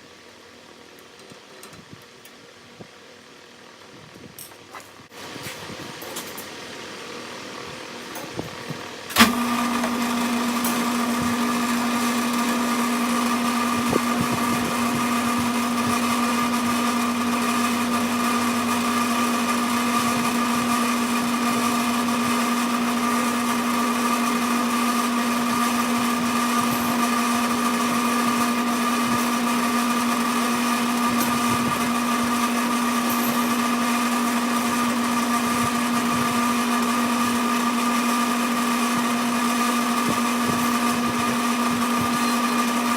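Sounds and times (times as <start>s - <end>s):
lathe whining: 9.1s - 42.9s.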